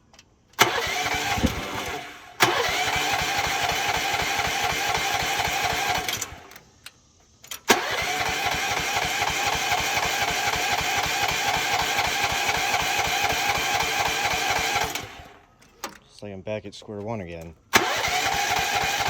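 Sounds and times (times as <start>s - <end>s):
small gasoline engine running: 0.6s - 6.5s, 7.7s - 15.4s, 17.7s - 19.0s.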